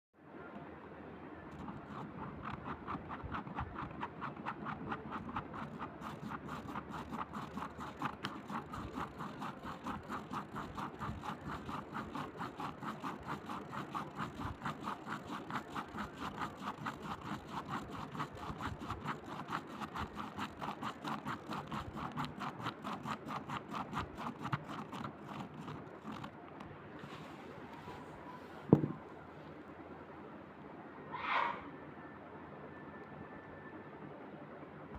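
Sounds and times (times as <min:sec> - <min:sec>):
rhythmic rasping scraping: 0:01.6 - 0:26.3.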